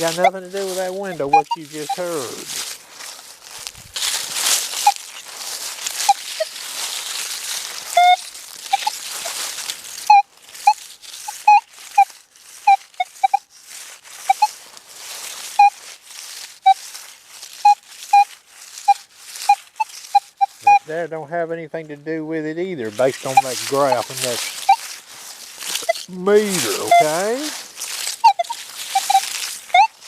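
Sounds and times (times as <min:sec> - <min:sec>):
metal detector beeps: 0:00.0 - 0:02.5, 0:04.7 - 0:05.2, 0:06.0 - 0:06.5, 0:07.9 - 0:09.0, 0:10.0 - 0:13.4, 0:14.2 - 0:14.6, 0:15.5 - 0:15.8, 0:17.6 - 0:20.9, 0:23.2 - 0:24.9, 0:25.7 - 0:27.6, 0:28.2 - 0:30.0
rustling hiss: 0:00.0 - 0:21.1, 0:22.4 - 0:30.0.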